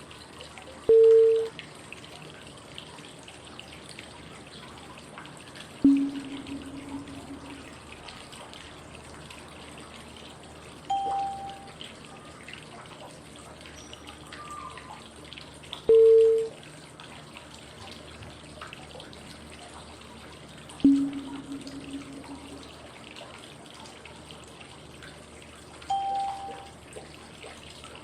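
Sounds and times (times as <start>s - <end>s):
chime-like cue tone: 5.8s - 7.8s, 10.9s - 11.7s, 20.8s - 22.7s, 25.9s - 26.7s
flowing water white noise: 5.8s - 8.2s, 10.3s - 11.8s, 25.8s - 26.8s.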